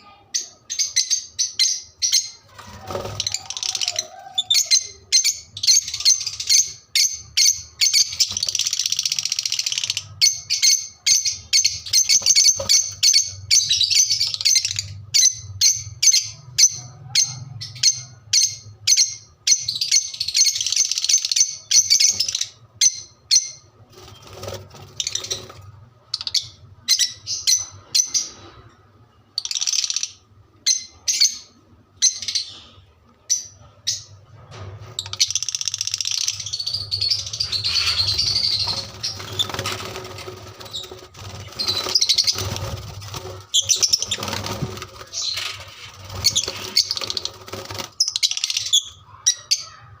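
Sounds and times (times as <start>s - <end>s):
parrot chirping: 35.0s - 49.9s.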